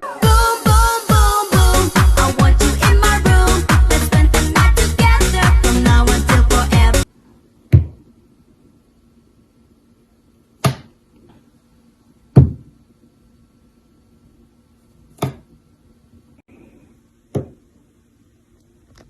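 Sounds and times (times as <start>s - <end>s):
faint steady hum: 1.6s - 19.0s
sharp knocks: 7.7s - 8.0s, 12.4s - 12.7s.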